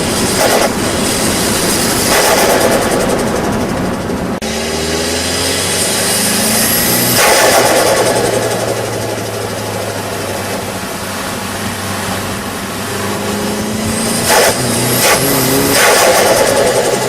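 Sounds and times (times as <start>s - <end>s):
car engine idling and revving: 0.0s - 17.0s
fluttering compressor surge: 0.0s - 17.0s
turbo whistle: 5.5s - 9.0s, 13.7s - 17.0s.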